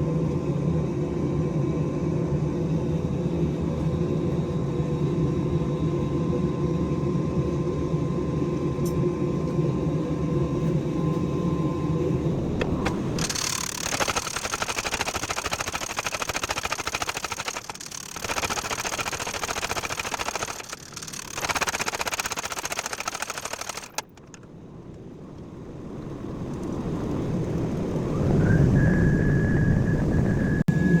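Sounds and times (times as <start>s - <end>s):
steady high whine: 0.2s - 31.0s.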